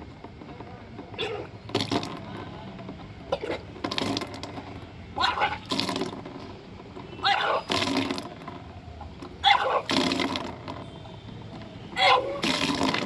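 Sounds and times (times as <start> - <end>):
person retching and vomiting: 1.2 - 2.2, 3.3 - 4.4, 5.2 - 6.2, 9.4 - 10.6, 12.0 - 13.0
water splashing: 5.2 - 6.2, 12.0 - 13.0.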